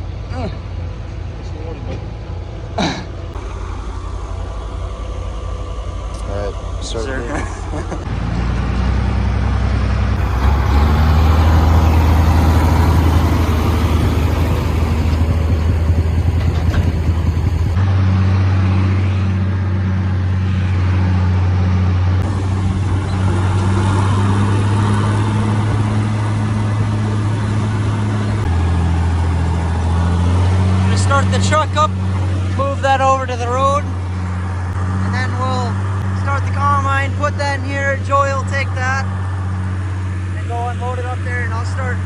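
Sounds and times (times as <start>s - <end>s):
farm vehicle engine droning: 0.0s - 42.0s.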